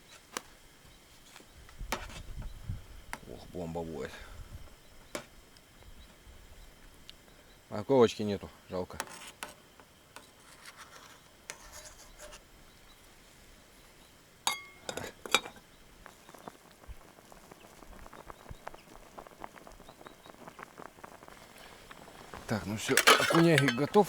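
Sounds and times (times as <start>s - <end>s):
metal spoon clinking on pot: 14.5s - 15.6s, 22.8s - 24.0s.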